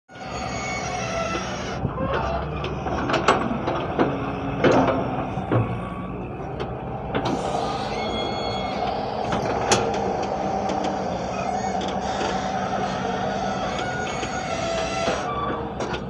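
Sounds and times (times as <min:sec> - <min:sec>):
hydraulic whine: 0:00.1 - 0:16.0
diesel engine running: 0:00.2 - 0:16.0.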